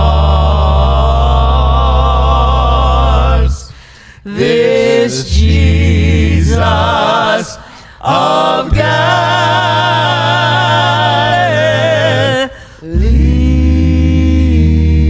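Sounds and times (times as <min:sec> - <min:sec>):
slow worship singing: 0:00.0 - 0:15.0.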